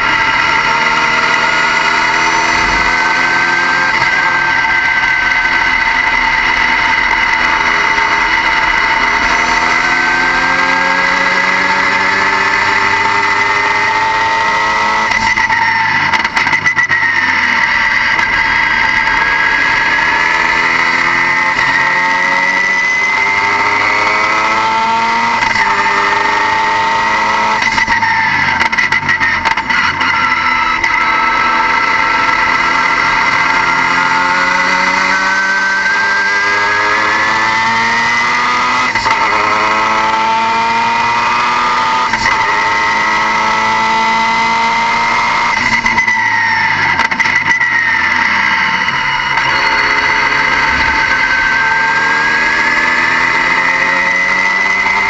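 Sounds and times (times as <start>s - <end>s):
steady high whine: 0.0s - 24.6s, 46.0s - 55.0s
car engine revving under load: 0.0s - 55.0s.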